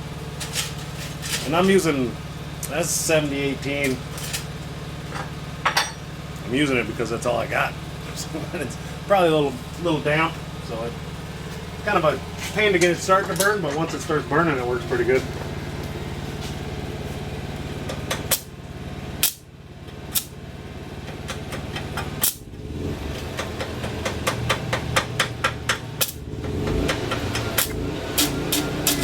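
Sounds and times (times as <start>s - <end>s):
welding hum: 6.2s - 23.4s, 24.2s - 29.0s
welding arc crackling: 14.9s - 20.4s, 22.2s - 23.4s, 25.9s - 29.0s
sharp welding arc cracks: 18.3s - 18.5s, 19.2s - 19.5s, 20.1s - 20.4s, 22.2s - 22.5s, 26.0s - 26.2s, 27.6s - 29.0s.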